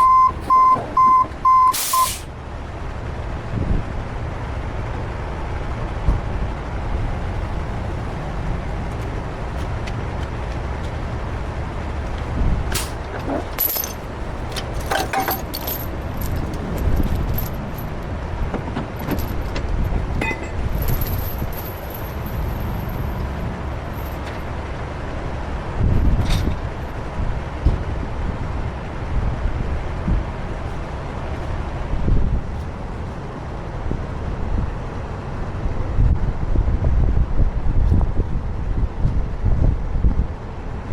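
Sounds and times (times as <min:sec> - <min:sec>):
diesel truck engine rumbling: 0:00.0 - 0:40.9
metallic clinks and knocks: 0:12.0 - 0:18.0, 0:18.9 - 0:24.4.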